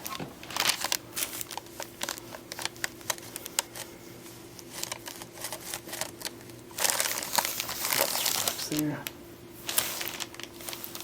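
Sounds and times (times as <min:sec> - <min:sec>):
paper sheet crinkling: 0:00.0 - 0:03.9, 0:04.6 - 0:11.0
faint steady hum: 0:00.0 - 0:11.0.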